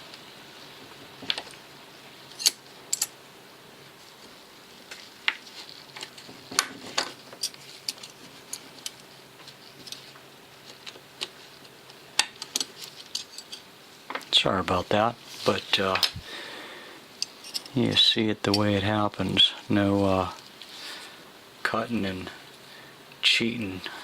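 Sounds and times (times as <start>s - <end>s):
small metal parts clicking: 2.3s - 3.2s, 6.0s - 9.1s, 12.2s - 13.7s, 17.2s - 17.8s.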